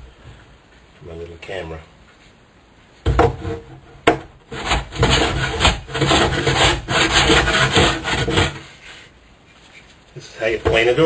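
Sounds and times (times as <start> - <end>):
hand plane shaving wood: 4.5 - 8.7.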